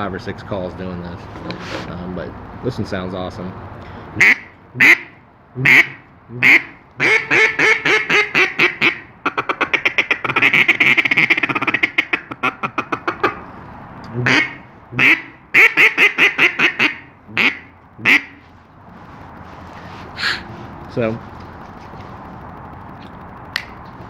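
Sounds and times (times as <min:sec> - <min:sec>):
duck call quacks: 0:04.2 - 0:13.4, 0:14.2 - 0:18.4, 0:20.2 - 0:20.5.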